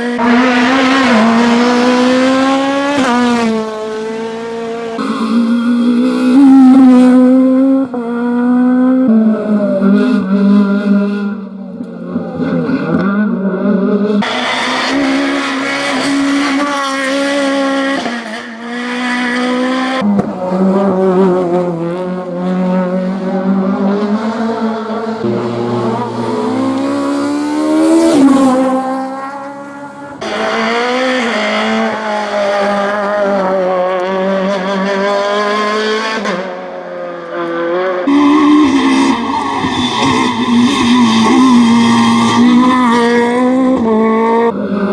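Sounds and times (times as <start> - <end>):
rally car engines revving hard: 0.0 - 44.9.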